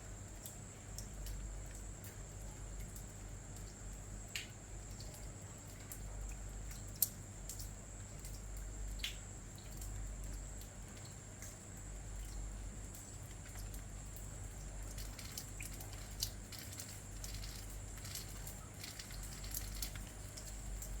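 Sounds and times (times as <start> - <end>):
rain dripping: 0.0 - 21.0.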